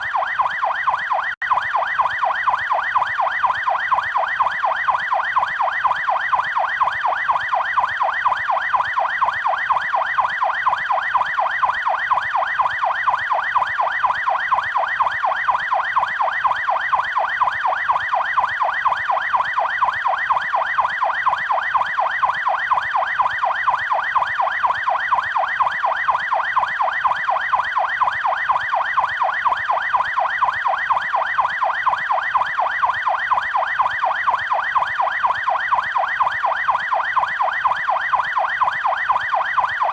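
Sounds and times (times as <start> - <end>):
police siren yelp: 0.0 - 39.9.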